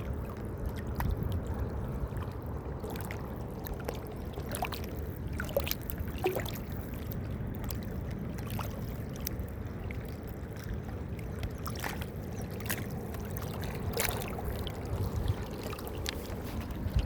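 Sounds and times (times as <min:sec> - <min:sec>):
water splashes and drips: 0:00.0 - 0:17.0
water trickling and lapping: 0:00.0 - 0:17.0
steady low rumble: 0:06.8 - 0:17.0.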